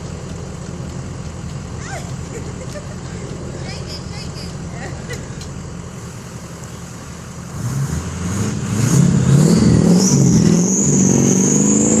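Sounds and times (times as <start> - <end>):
engine accelerating with whine: 4.6 - 12.0.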